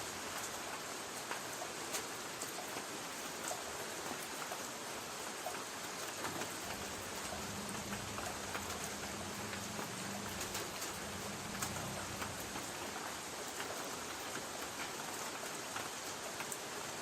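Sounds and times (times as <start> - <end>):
rain on a tin roof: 0.0 - 17.0
faint low hum: 6.4 - 13.2.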